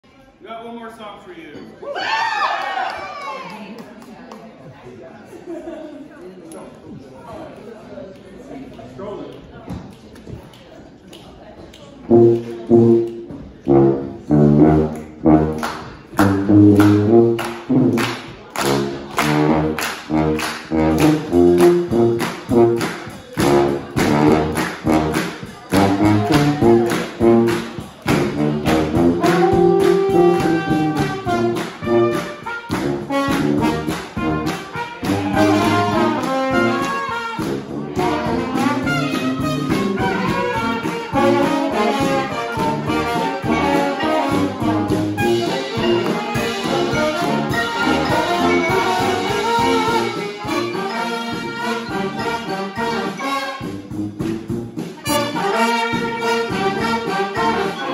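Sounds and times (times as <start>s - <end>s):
brass band playing: 12.0s - 57.9s
steady drum beat: 12.2s - 57.9s.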